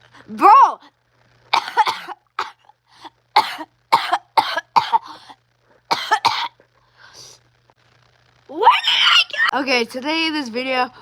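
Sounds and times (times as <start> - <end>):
person coughing: 1.6 - 6.6.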